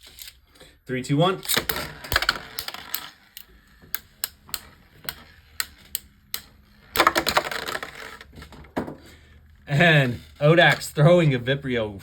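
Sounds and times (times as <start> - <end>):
spinning tops clacking together: 1.5 - 8.2.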